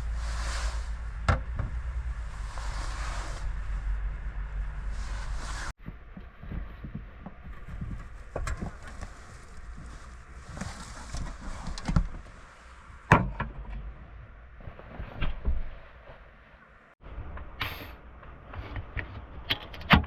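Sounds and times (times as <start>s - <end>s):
steady rushing noise: 0.0s - 5.8s.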